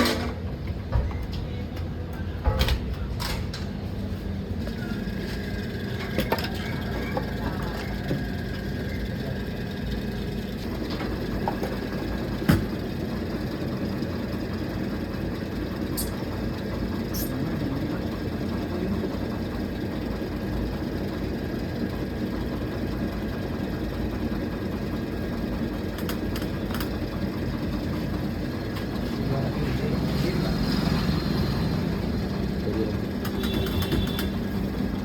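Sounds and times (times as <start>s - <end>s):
factory machinery humming: 0.0s - 35.0s.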